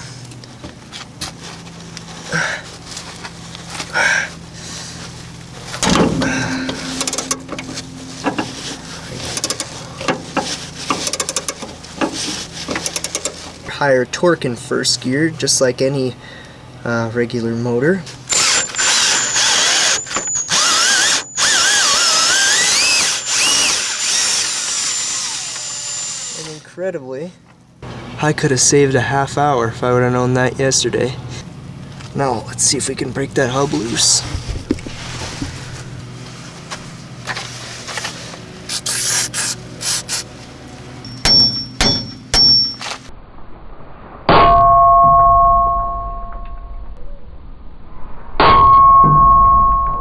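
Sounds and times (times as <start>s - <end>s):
scraping rasping sounds: 4.6s - 13.7s, 33.8s - 40.5s
hammer blows on metal: 5.8s - 11.6s, 41.1s - 43.0s
power drill motor whine: 18.3s - 26.7s.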